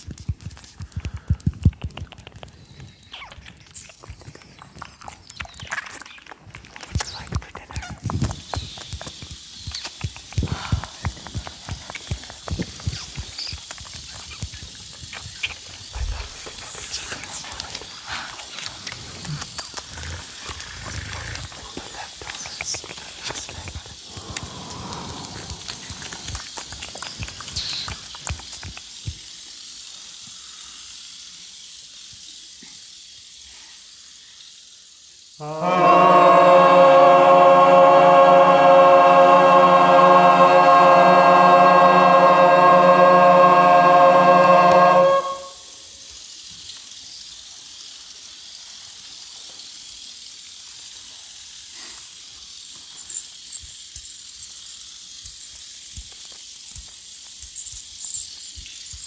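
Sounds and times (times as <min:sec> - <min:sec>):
crackling clicks: 0:00.0 - 0:32.4
faint hiss: 0:00.0 - 0:59.0
ensemble holding loud chord: 0:35.4 - 0:45.6.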